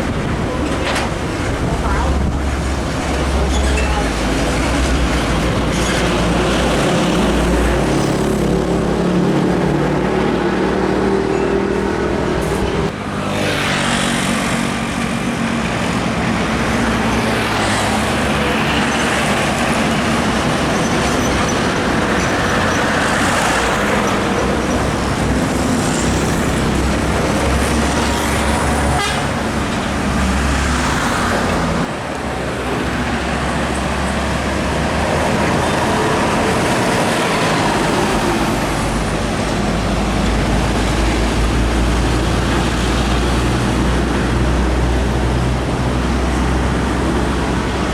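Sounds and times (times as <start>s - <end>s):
trucks passing on highway: 0.0s - 47.9s
horns tooting: 28.0s - 29.6s.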